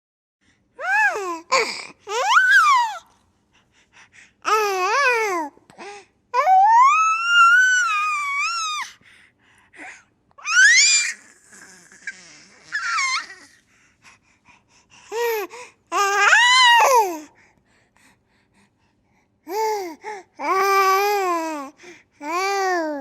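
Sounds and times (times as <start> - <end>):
baby squealing and babbling: 0.8 - 3.1, 6.4 - 8.9, 10.4 - 13.6.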